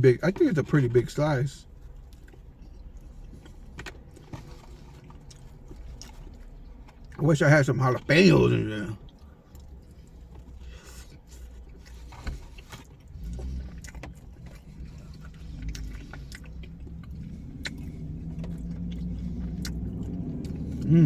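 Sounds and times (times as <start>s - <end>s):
low vehicle rumble: 0.0s - 21.0s.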